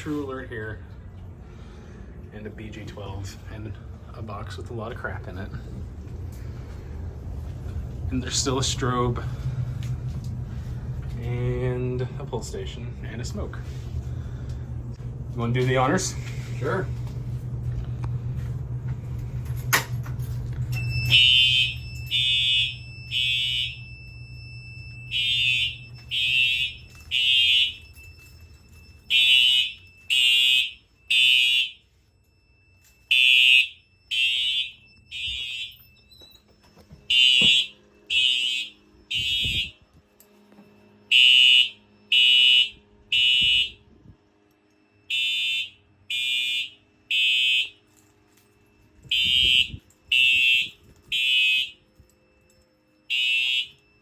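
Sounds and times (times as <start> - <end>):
fire alarm horn blasts: 20.7 - 54.0.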